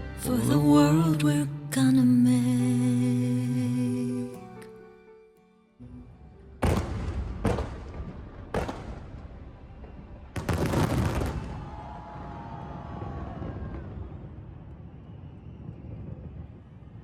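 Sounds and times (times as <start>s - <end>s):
rapid crackling bangs: 6.6s - 9.7s
fireworks booming: 6.6s - 17.0s.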